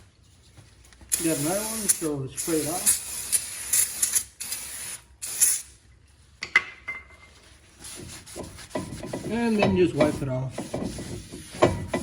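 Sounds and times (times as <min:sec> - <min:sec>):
aerosol spray hissing: 0:01.1 - 0:05.7.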